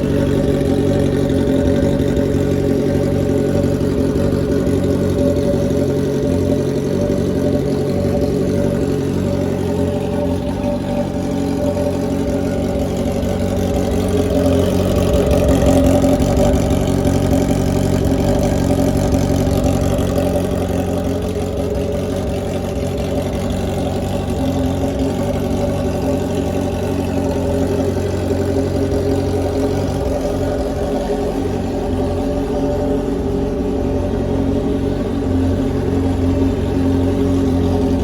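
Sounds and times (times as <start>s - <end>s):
loud motorcycle exhaust: 0.0s - 38.0s.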